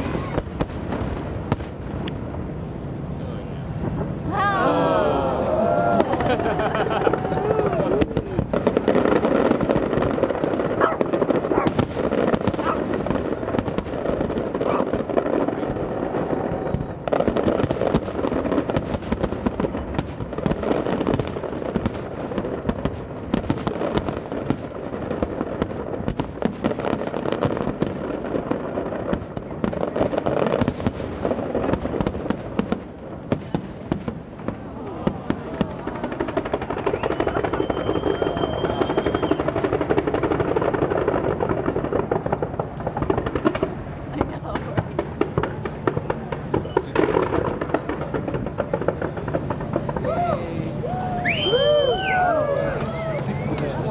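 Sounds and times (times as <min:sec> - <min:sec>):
constant rumble: 0:00.0 - 0:26.6, 0:27.5 - 0:53.9
fireworks bangs and crackles: 0:00.0 - 0:53.9
high whistle: 0:36.9 - 0:39.4, 0:51.2 - 0:53.6.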